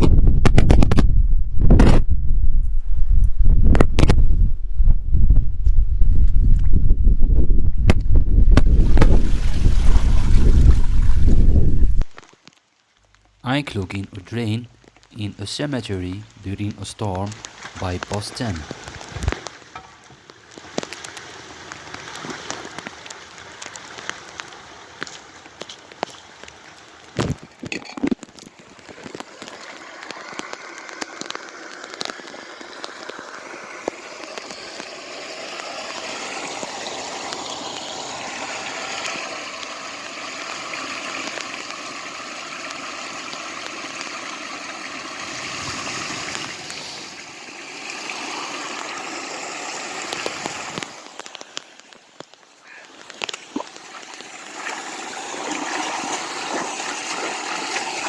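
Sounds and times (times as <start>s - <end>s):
water rushing into drain: 8.6s - 12.2s, 28.6s - 51.9s, 52.8s - 58.0s
rain falling: 8.8s - 58.0s.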